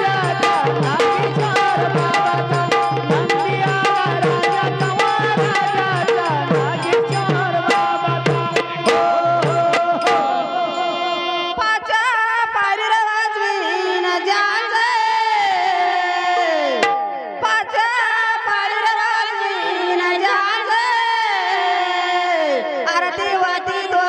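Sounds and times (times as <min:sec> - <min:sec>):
musical accompaniment: 0:00.0 - 0:11.6
woman singing: 0:00.0 - 0:24.0.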